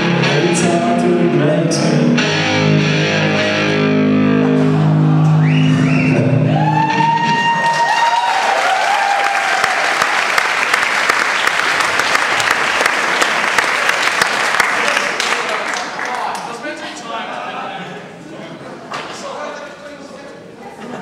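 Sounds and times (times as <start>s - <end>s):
band holding final guitar chord: 0.0s - 5.5s
audience applause and cheering: 4.4s - 16.6s.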